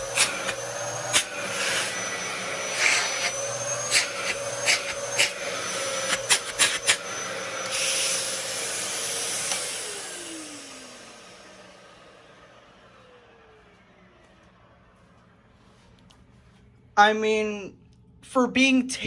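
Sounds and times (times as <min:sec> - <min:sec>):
motor winding down: 0:00.0 - 0:14.5
vacuum cleaner running: 0:00.0 - 0:16.6.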